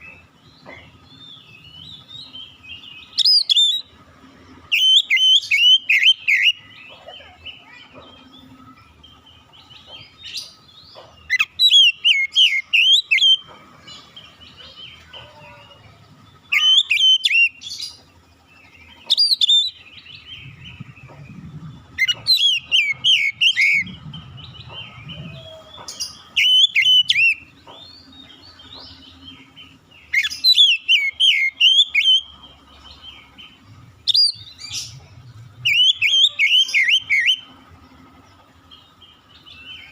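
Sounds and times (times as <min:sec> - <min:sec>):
bird singing whistled notes: 0:01.1 - 0:03.9, 0:04.7 - 0:06.8, 0:09.4 - 0:13.5, 0:16.3 - 0:18.0, 0:19.0 - 0:35.0, 0:35.6 - 0:37.5.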